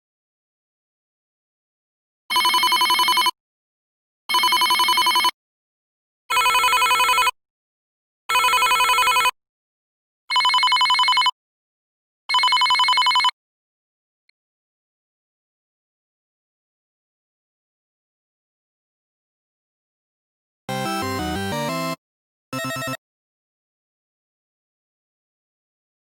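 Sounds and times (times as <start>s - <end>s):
telephone ringing: 2.3s - 3.4s, 4.3s - 5.4s, 6.3s - 7.4s, 8.3s - 9.4s, 10.3s - 11.3s, 12.3s - 13.3s, 22.6s - 23.0s.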